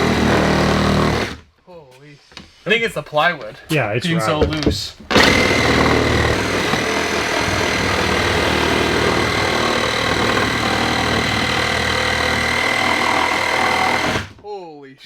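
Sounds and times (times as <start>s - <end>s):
reciprocating saw cutting plywood: 0.0s - 1.4s, 5.1s - 14.4s
plywood rattling: 4.4s - 14.4s.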